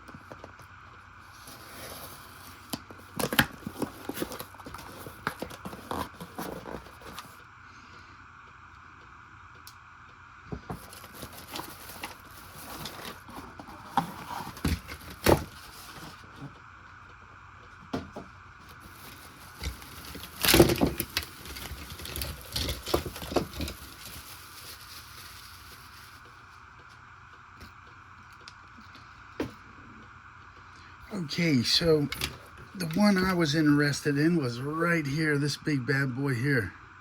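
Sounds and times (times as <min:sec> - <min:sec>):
faint background hum: 0:00.0 - 0:37.0
package rustling: 0:01.4 - 0:07.4, 0:10.7 - 0:16.5, 0:18.6 - 0:26.3
scraping: 0:18.7 - 0:26.2.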